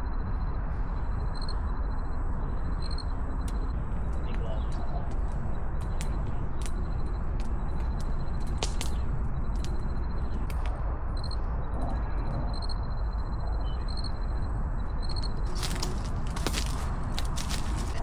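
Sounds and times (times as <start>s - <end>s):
low rumble: 0.0s - 18.0s
faint high-pitched chirping: 11.2s - 16.7s.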